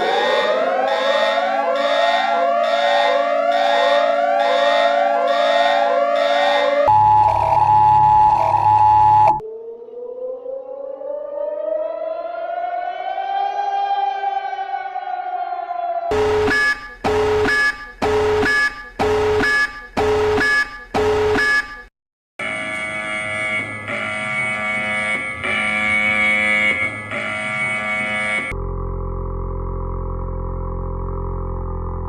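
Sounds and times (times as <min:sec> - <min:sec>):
two-tone alarm: 0:00.0 - 0:09.5, 0:16.1 - 0:28.6
pulsed alarm tones: 0:00.0 - 0:13.3, 0:16.1 - 0:31.1
siren wail: 0:00.0 - 0:21.4, 0:22.4 - 0:32.0
low hum: 0:28.4 - 0:32.0.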